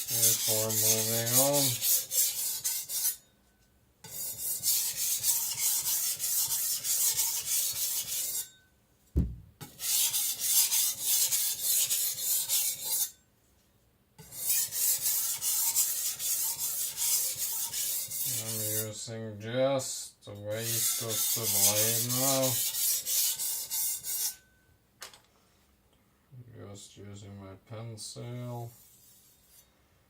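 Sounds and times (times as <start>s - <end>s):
knife scraping on whetstone: 0.0s - 3.2s, 4.0s - 8.6s, 9.7s - 13.2s, 14.2s - 18.8s, 20.6s - 24.4s
low knock: 9.2s - 9.6s.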